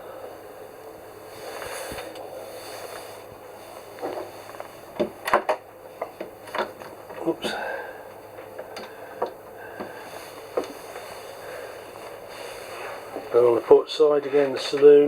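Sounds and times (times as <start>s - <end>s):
knocks and clicks in wooden cabin: 4.9s - 7.3s, 8.3s - 10.8s
soft rustling: 9.9s - 15.0s.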